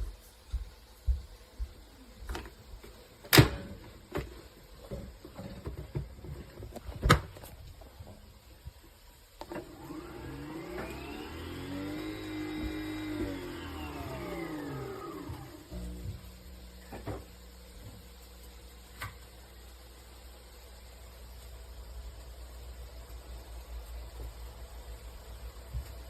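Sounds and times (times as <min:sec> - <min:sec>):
capsule machine motor whine: 0:09.5 - 0:17.3.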